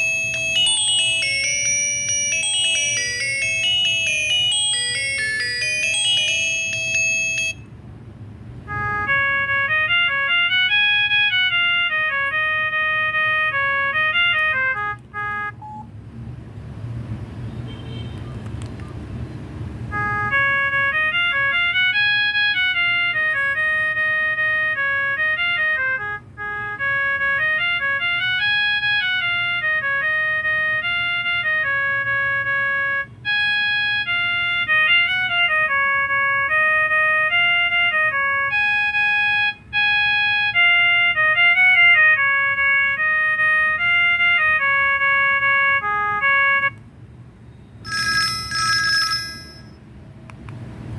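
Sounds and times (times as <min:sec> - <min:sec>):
phone ringtone beeping melody: 0:00.0 - 0:07.7, 0:15.5 - 0:16.0, 0:27.6 - 0:35.7, 0:47.8 - 0:49.9.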